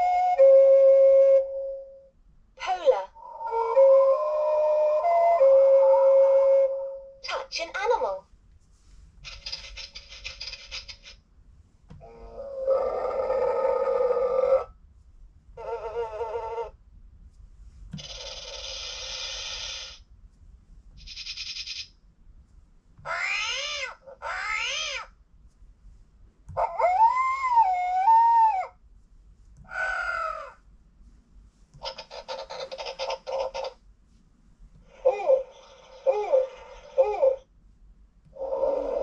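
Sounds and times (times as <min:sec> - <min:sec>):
toy playing animal sound effects: 0:09.2 - 0:11.2, 0:12.0 - 0:14.7, 0:15.6 - 0:16.8, 0:18.0 - 0:20.0, 0:21.0 - 0:21.9, 0:23.0 - 0:25.1, 0:26.6 - 0:28.7, 0:31.8 - 0:33.8, 0:34.8 - 0:37.4, 0:38.3 - 0:39.0.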